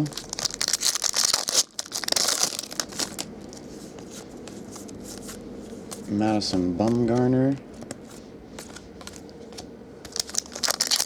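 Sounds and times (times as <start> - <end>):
foil wrapper tearing and crinkling: 0.0 - 3.6, 10.1 - 11.0.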